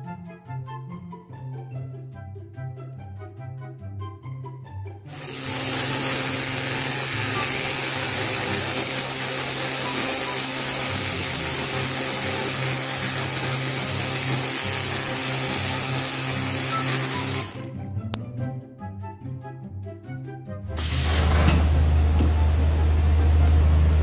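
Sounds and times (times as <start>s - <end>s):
background music: 0.0s - 21.0s
power tool running: 5.2s - 17.9s.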